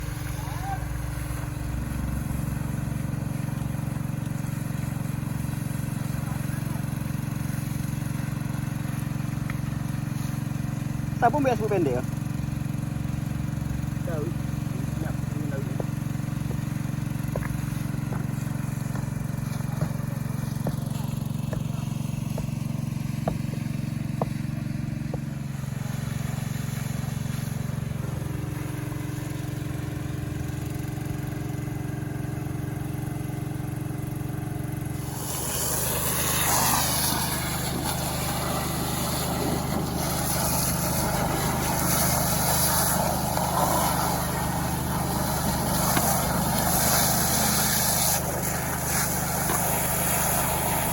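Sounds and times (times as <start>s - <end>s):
small petrol engine running: 0.0s - 50.9s
loud hissing rush: 34.9s - 50.9s.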